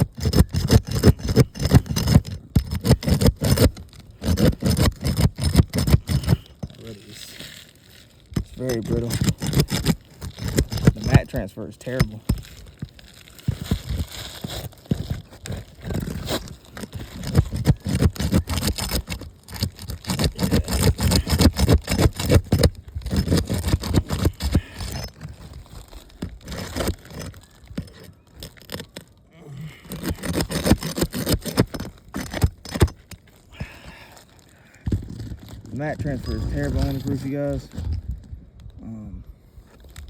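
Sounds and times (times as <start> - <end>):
roof shingle crackling and tearing: 0.0 - 38.8.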